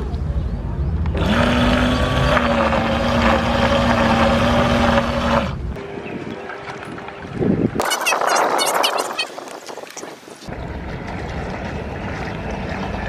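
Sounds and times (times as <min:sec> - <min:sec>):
electric motors whirring: 0:01.2 - 0:05.9.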